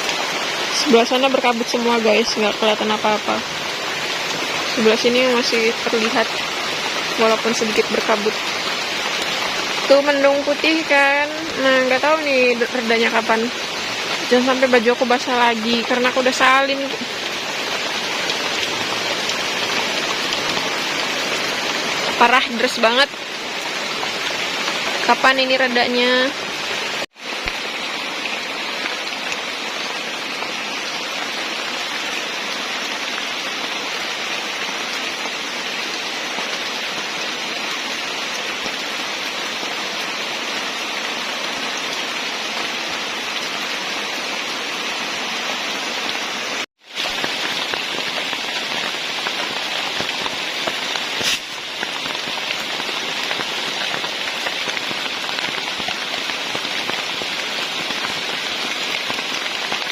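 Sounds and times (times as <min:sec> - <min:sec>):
heavy rain on leaves: 0:00.0 - 0:59.9.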